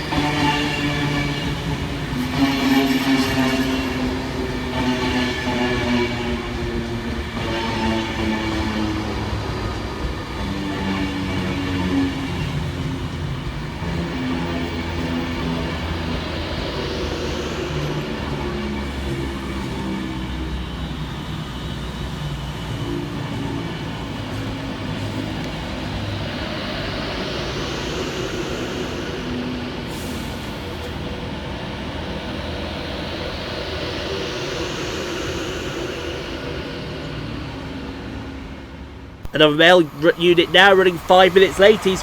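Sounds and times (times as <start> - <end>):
electric train rumble and hum: 0.0 - 42.0
high hiss: 25.3 - 37.2.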